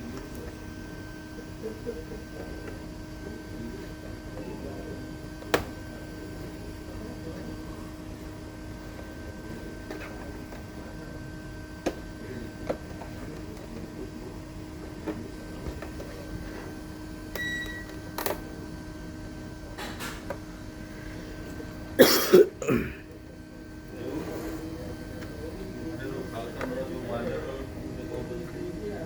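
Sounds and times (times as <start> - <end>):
electrical hum: 0.0 - 29.0
brief beep: 17.4 - 18.0.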